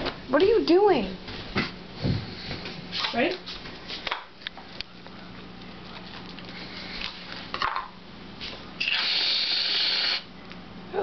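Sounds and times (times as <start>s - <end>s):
aerosol can spraying hiss: 8.8s - 10.3s.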